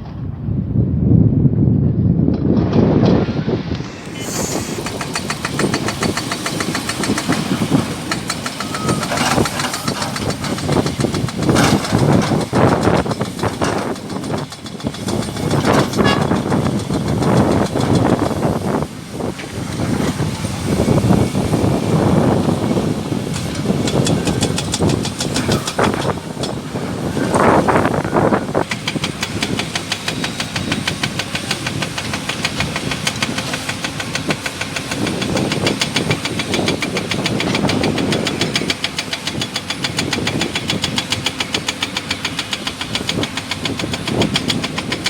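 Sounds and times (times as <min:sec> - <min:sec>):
diesel engine rumble: 0:00.0 - 0:45.0
metal clanks and knocks: 0:04.4 - 0:18.3, 0:23.3 - 0:27.6.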